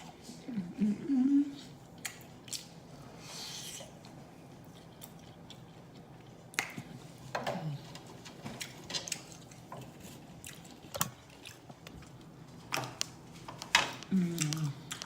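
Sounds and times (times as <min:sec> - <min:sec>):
chewing with wet mouth smacks: 0:01.9 - 0:02.8, 0:03.8 - 0:07.0, 0:07.6 - 0:13.2, 0:13.9 - 0:15.0.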